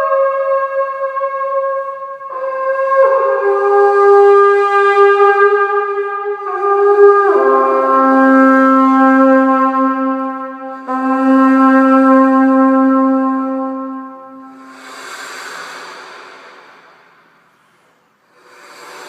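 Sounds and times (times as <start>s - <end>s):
bronze war trumpet long notes: 0.0s - 15.1s.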